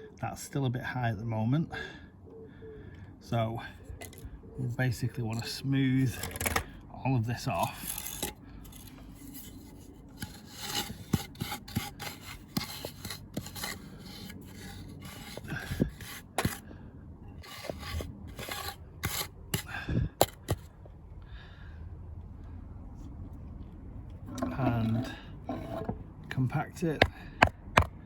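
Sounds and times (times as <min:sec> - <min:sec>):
sand being scraped flat: 0:07.7 - 0:16.6, 0:17.4 - 0:20.6.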